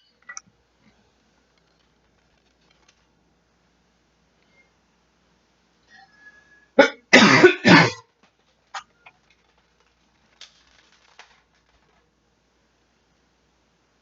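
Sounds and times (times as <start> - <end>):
person coughing: 6.8 - 8.1.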